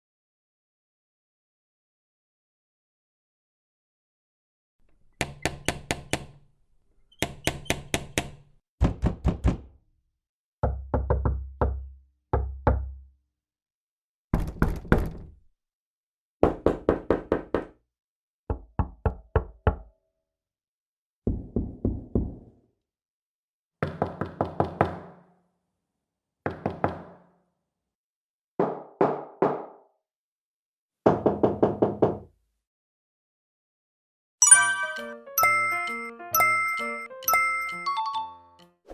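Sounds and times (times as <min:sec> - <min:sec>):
knuckles knocking on wooden door: 0:07.2 - 0:09.7, 0:10.6 - 0:13.0, 0:14.4 - 0:15.4, 0:16.4 - 0:17.8, 0:18.5 - 0:19.9, 0:21.3 - 0:22.6, 0:31.1 - 0:32.3.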